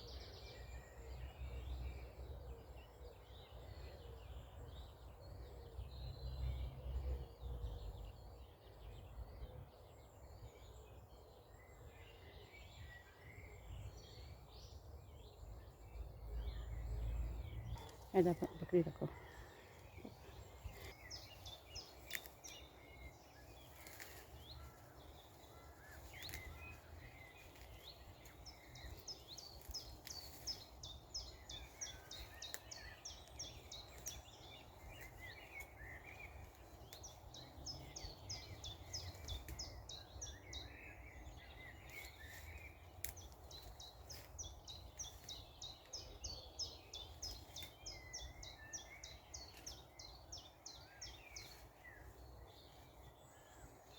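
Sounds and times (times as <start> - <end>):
small birds singing: 0.0 - 53.9.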